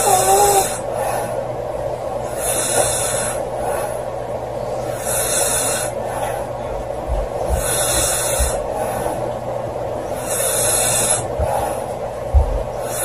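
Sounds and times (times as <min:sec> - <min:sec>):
girl snoring: 0:00.0 - 0:00.9, 0:10.2 - 0:11.3.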